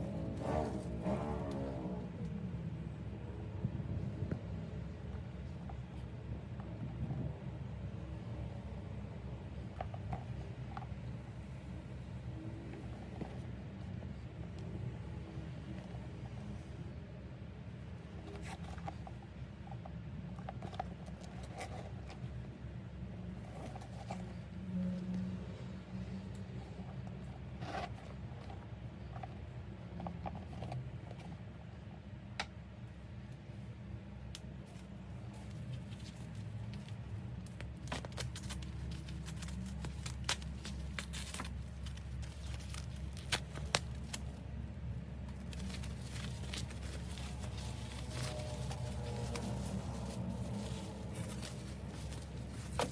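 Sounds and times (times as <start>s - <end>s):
steady low hum: 0.0s - 52.9s
packaging rustling and clicking: 34.7s - 52.9s.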